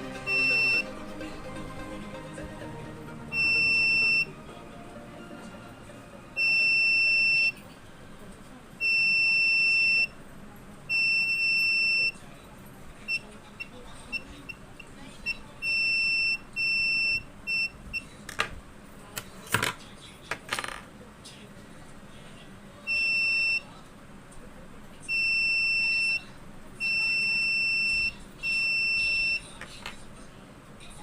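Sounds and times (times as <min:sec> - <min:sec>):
piezo buzzer beeping: 0:00.0 - 0:00.9, 0:03.3 - 0:04.3.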